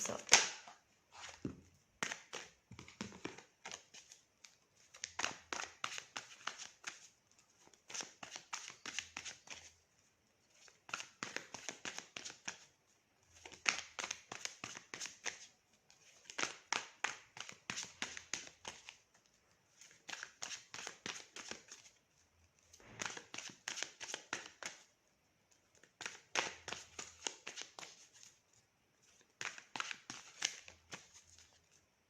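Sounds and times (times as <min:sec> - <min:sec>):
cards being shuffled: 0:00.1 - 0:09.7, 0:10.5 - 0:12.7, 0:13.3 - 0:22.0, 0:22.8 - 0:24.9, 0:25.7 - 0:28.4, 0:29.0 - 0:31.8.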